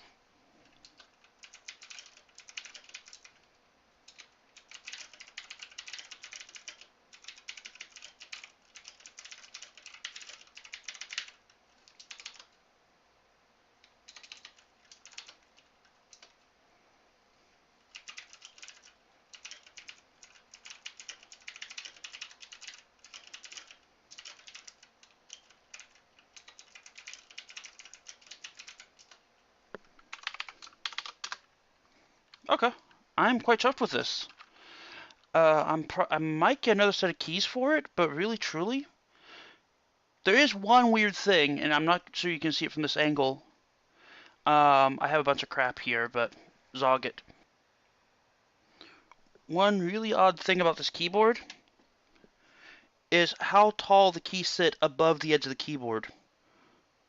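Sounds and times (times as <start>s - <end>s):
mechanical keyboard typing: 0.8s - 3.4s, 4.1s - 12.6s, 14.0s - 16.4s, 17.9s - 29.2s, 30.1s - 31.4s.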